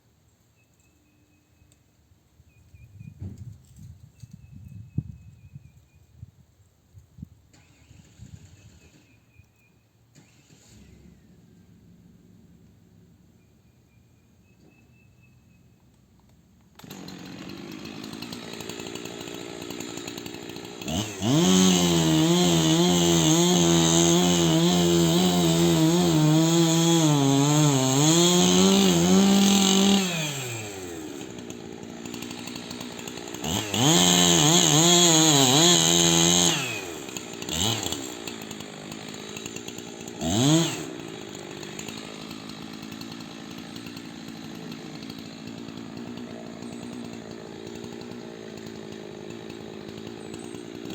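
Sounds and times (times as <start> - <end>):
chainsaw revving and cutting: 7.6 - 9.2, 16.6 - 50.9.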